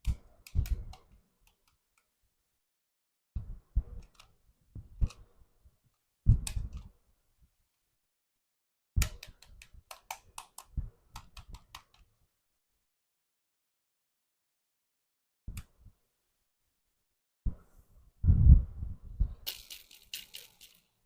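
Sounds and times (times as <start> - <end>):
toys knocking and rattling: 19.3 - 21.0
sharp toy clicks: 19.5 - 20.9.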